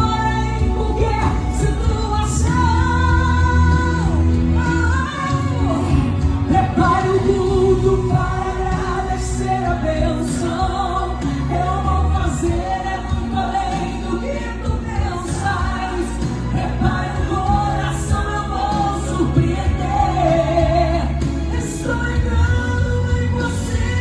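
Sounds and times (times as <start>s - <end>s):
gospel singing: 0.0s - 24.0s
live band accompaniment: 0.0s - 24.0s.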